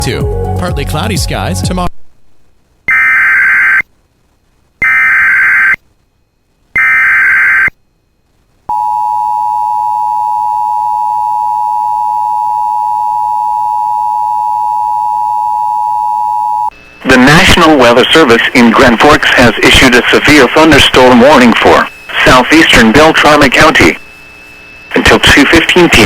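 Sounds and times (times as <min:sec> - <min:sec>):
buzzing digital data tones: 0:02.9 - 0:03.9, 0:04.8 - 0:05.8, 0:06.8 - 0:07.8
steady attention tone: 0:02.9 - 0:03.9, 0:04.8 - 0:26.0.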